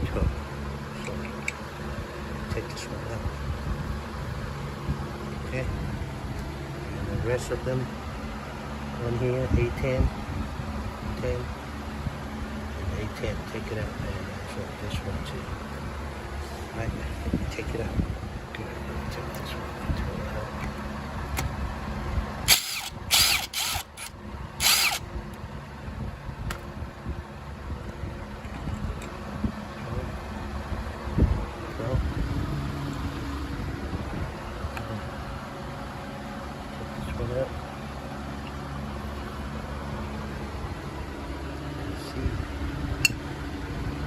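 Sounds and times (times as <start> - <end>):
low mechanical hum: 0.0 - 44.0
cordless power driver whirring: 22.4 - 25.4.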